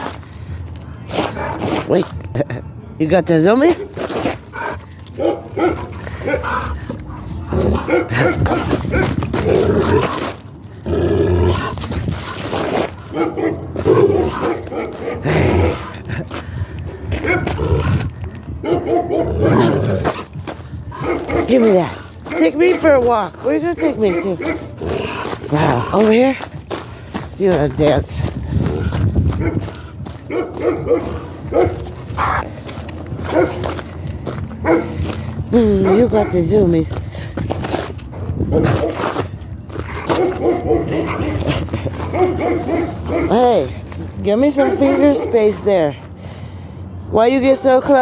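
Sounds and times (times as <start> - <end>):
dog yipping and barking: 5.2 - 9.2, 30.3 - 32.5, 33.2 - 33.7, 34.6 - 35.0, 40.0 - 41.4, 42.0 - 43.4
dog vocalizing in play: 30.3 - 32.5.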